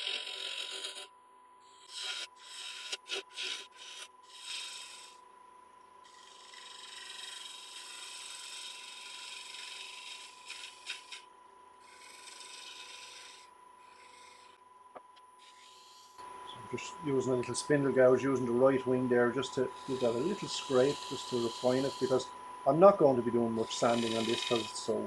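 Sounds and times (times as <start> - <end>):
gouge scraping spinning wood: 0.0 - 1.1, 1.7 - 5.2, 6.1 - 14.6, 15.4 - 16.2, 19.7 - 22.2, 23.3 - 25.0
lathe high whine: 11.8 - 14.6, 15.4 - 25.0.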